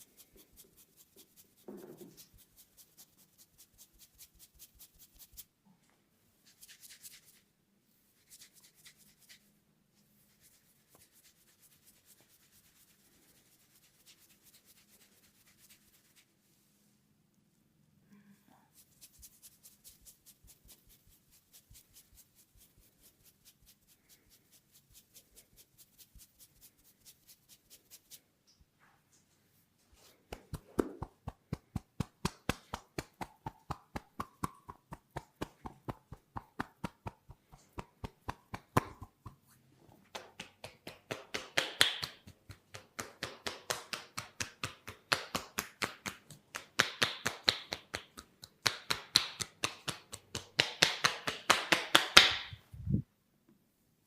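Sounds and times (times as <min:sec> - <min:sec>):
hands tapping rhythmically: 0:30.3 - 0:39.4, 0:40.1 - 0:52.6.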